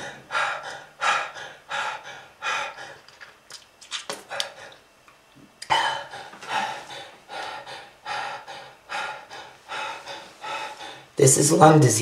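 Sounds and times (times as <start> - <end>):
person gasping for breath: 0.0 - 3.2, 5.6 - 11.1.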